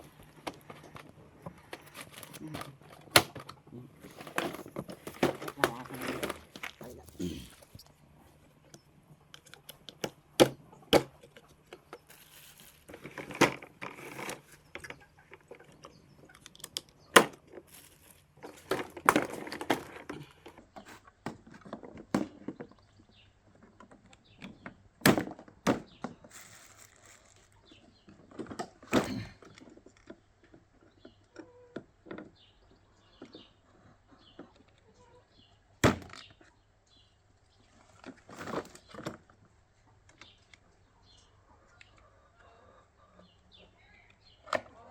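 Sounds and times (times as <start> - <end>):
rustling: 0.0 - 21.0, 26.1 - 28.4
parts clicking and knocking: 0.0 - 22.6.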